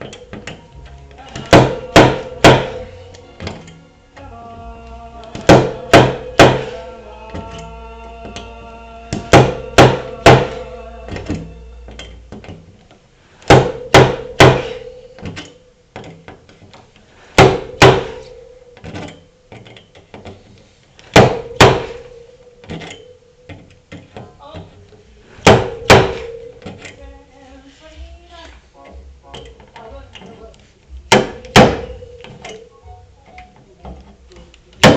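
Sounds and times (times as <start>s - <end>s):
metal knocks with metallic ring: 13.5s - 15.6s, 21.1s - 23.6s, 25.4s - 26.9s, 31.1s - 32.7s.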